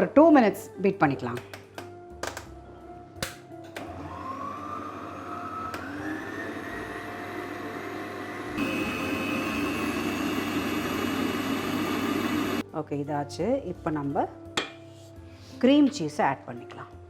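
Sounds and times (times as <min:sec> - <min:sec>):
electric mixer motor whine: 0:03.8 - 0:12.6.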